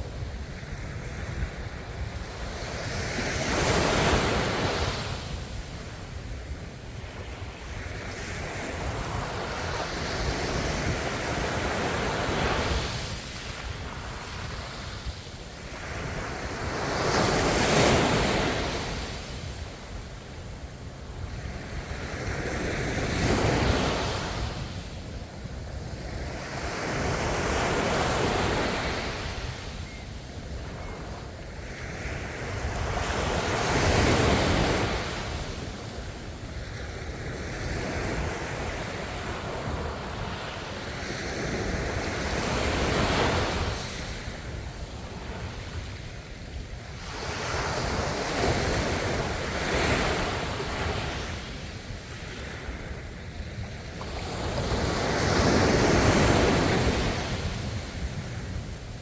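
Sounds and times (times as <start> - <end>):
ocean waves breaking on shore: 0.0 - 59.0.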